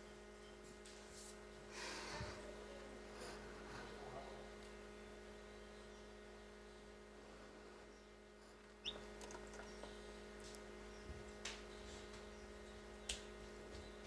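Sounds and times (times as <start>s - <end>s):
electrical hum: 0.0s - 14.0s
chick peeping: 8.8s - 14.0s.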